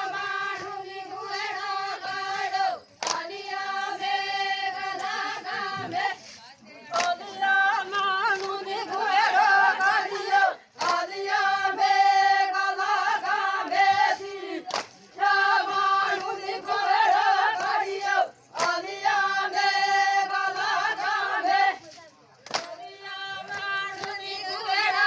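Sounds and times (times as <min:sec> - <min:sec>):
woman singing folk song: 0:00.0 - 0:14.6, 0:22.6 - 0:25.0.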